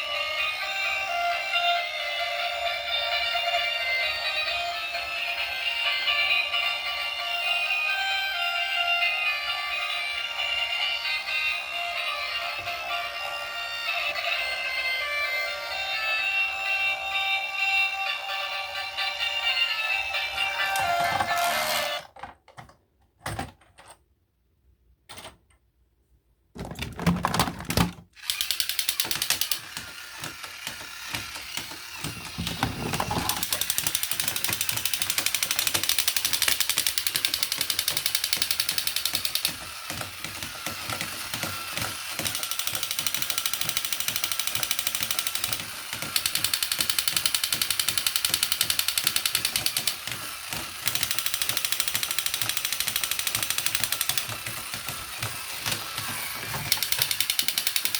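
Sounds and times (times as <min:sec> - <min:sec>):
rapid mechanical clicking: 0:28.2 - 0:57.9.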